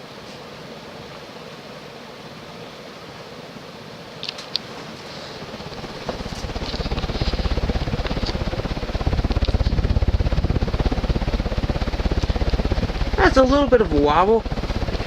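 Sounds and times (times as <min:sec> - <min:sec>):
ceiling fan wind buffeting microphone: 0:04.6 - 0:15.0.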